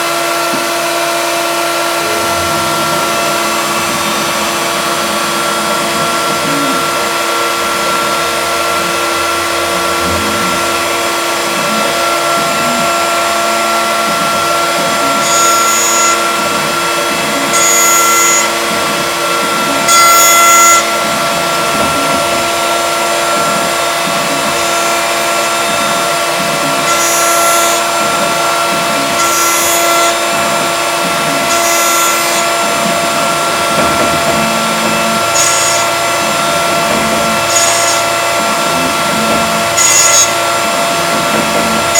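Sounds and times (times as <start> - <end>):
milling machine spindle whine: 0.0 - 41.9
cutter hissing bursts: 0.2 - 41.9.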